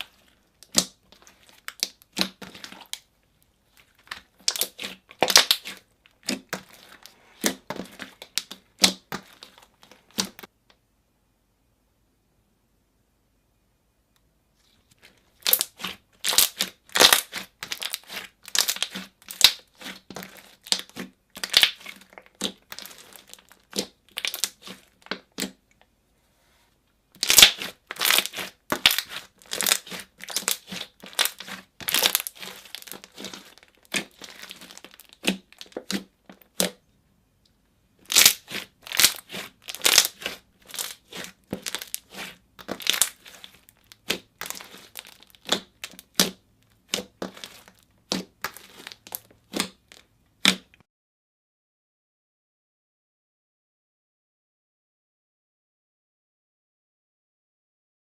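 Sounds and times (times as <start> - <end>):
slime squeezed crackling pops: 4.1 - 9.4, 15.4 - 25.5, 27.2 - 36.8, 38.1 - 50.7.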